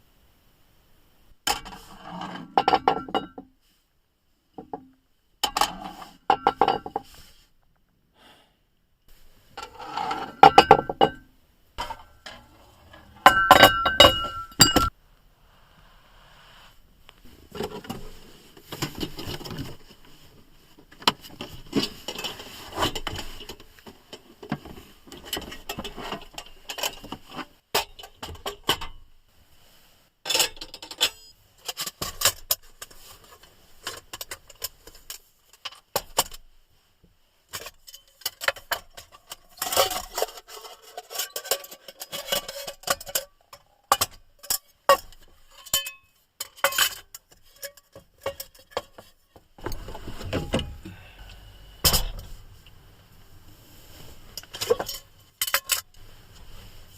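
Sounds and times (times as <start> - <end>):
glassy clinks: 13.2 - 14.9.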